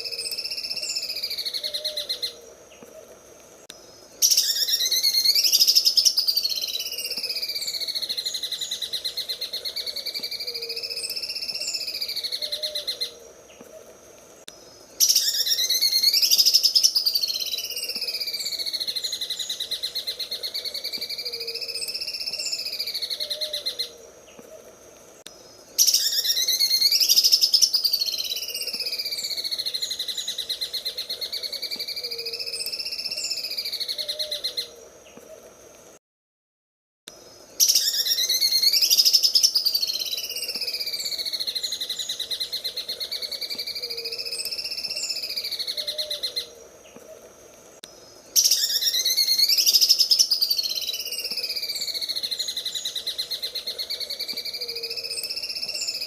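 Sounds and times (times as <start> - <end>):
bird singing rapid trill: 4.2 - 13.1, 15.0 - 24.0, 25.8 - 34.7, 37.6 - 46.5, 48.3 - 56.0.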